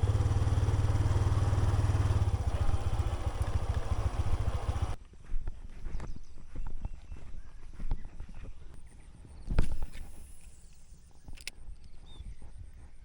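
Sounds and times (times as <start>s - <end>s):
motorcycle engine running: 0.0s - 5.0s.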